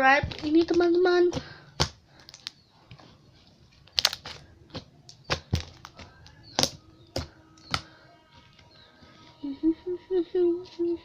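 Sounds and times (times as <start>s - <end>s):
slime crackling pops: 5.1s - 6.8s.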